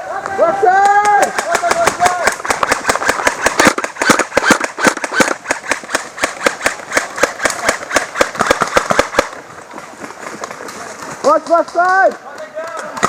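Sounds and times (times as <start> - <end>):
airsoft guns firing: 0.8 - 9.6.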